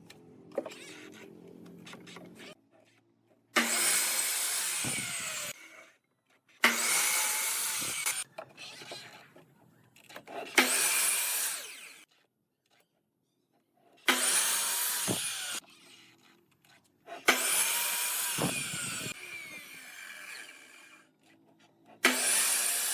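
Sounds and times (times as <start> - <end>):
power tool working wood: 3.6 - 5.9, 6.6 - 9.2, 10.3 - 12.1, 14.0 - 16.1, 17.2 - 21.3, 21.9 - 22.9.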